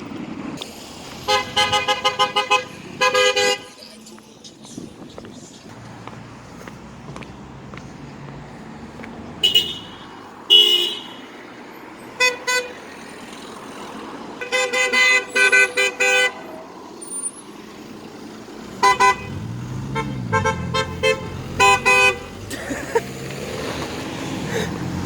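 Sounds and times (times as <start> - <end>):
car horns honking: 1.2 - 3.9, 9.4 - 11.3, 12.2 - 12.8, 14.4 - 16.5, 18.6 - 23.0.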